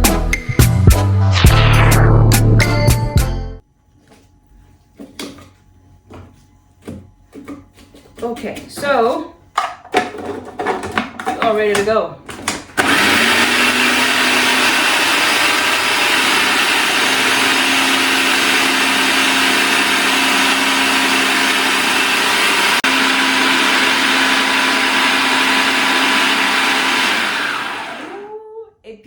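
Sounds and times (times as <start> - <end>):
electric blender running: 12.8 - 28.4.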